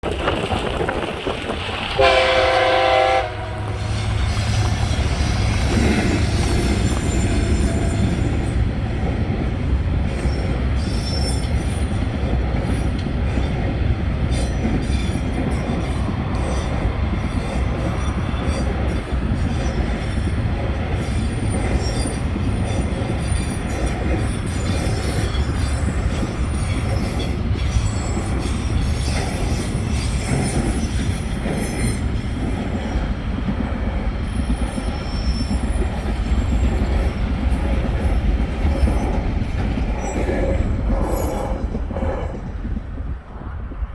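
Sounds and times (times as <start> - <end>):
freight train running past: 0.0 - 43.9
train horn blast: 2.0 - 5.9.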